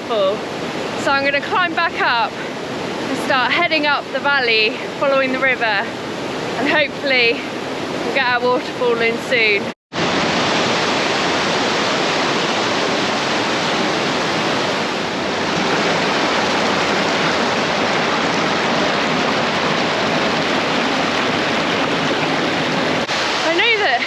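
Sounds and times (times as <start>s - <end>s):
river water rushing: 0.0s - 24.0s.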